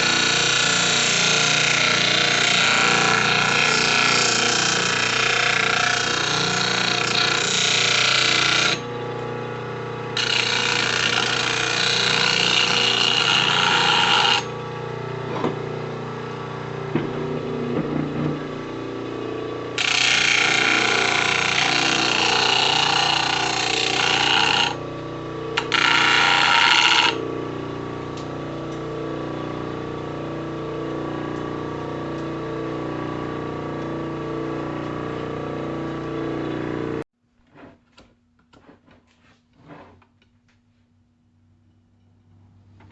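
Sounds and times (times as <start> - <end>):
harsh drilling noise: 0.0 - 16.2, 16.8 - 30.0
drill press motor humming: 0.0 - 37.1.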